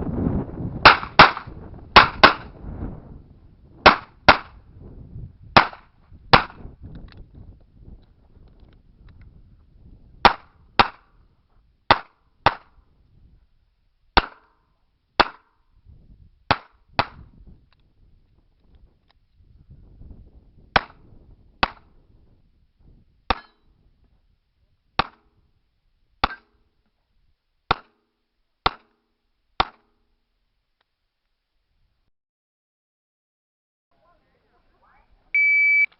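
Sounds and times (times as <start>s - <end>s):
revolver gunshots: 0.8s - 2.5s.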